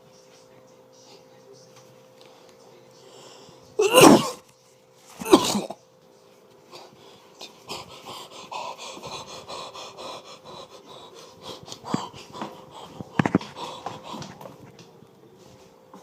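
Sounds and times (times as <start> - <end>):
person breathing hard raspy: 6.7 - 14.7.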